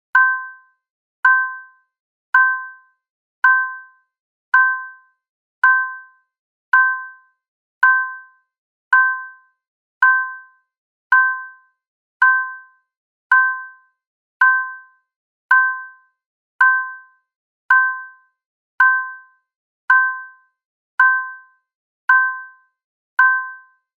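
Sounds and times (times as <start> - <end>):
two-tone chime ding: 0.2 - 0.6, 23.2 - 23.7.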